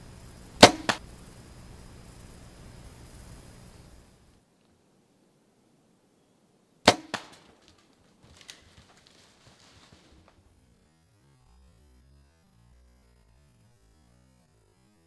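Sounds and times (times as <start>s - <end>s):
bow string snap: 0.6s - 1.0s, 6.9s - 7.5s
sharp crack: 0.6s - 1.1s, 6.9s - 9.0s
rustling and crackling in brush: 6.9s - 10.5s.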